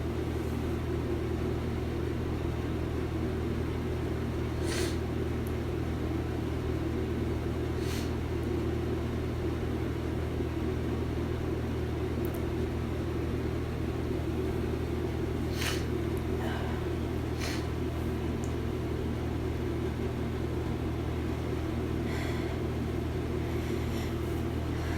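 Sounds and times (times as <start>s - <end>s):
steady low hum: 0.0s - 24.9s
nasal sniffles: 4.6s - 5.0s, 7.8s - 8.2s, 15.4s - 15.9s, 17.3s - 17.8s.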